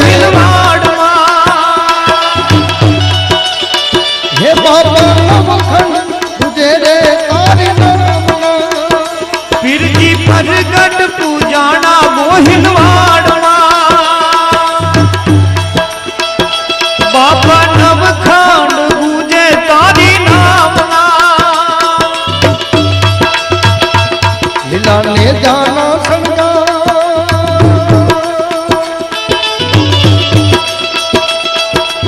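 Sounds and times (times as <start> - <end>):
hand drumming: 0.0 - 32.0
ornamented lead melody: 14.4 - 32.0.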